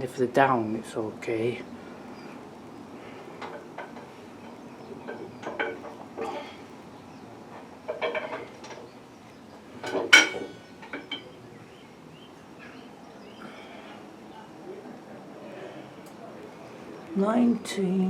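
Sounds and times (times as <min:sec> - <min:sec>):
clattering knocks: 0:03.4 - 0:06.6, 0:07.9 - 0:08.9, 0:09.8 - 0:11.3.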